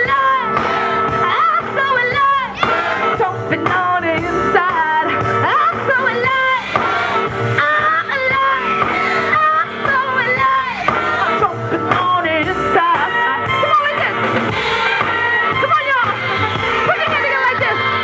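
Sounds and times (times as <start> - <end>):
band with drums: 0.0 - 18.0
woman singing: 0.0 - 18.0.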